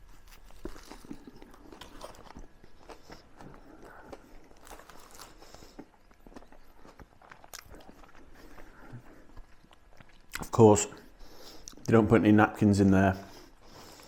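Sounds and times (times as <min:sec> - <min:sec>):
person chewing a burger: 0:00.0 - 0:11.9, 0:13.3 - 0:14.0
mouth clicks and crunches: 0:00.0 - 0:12.0.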